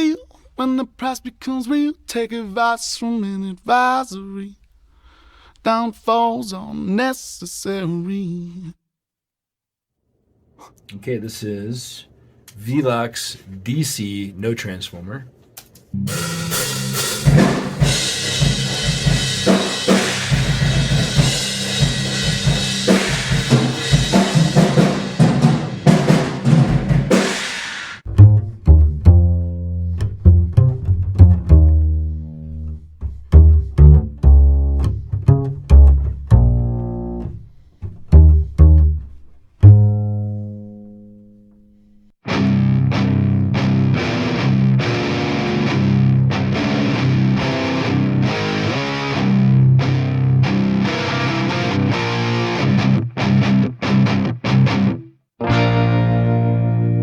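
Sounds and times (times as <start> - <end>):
upright bass plucked: 16.0 - 24.6, 28.1 - 41.9, 55.5 - 57.0
drum kit playing: 16.0 - 29.4, 30.0 - 39.9.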